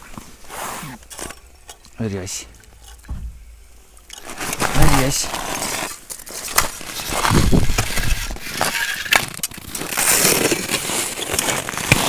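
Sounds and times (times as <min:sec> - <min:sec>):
ice and snow crunching: 0:00.0 - 0:01.6, 0:04.1 - 0:12.0.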